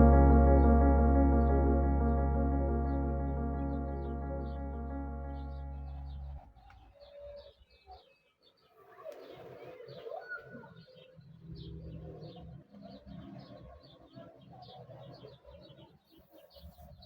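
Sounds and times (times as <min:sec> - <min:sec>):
soft ambient music: 0:00.0 - 0:06.5.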